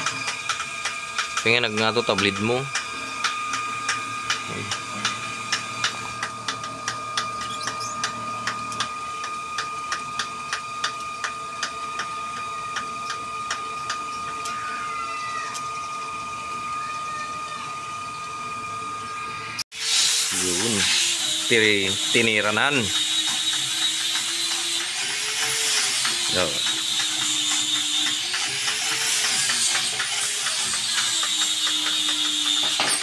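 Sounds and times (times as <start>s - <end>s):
lathe ticking: 0.0s - 14.1s, 21.0s - 32.7s
metal lathe whine: 0.0s - 33.0s.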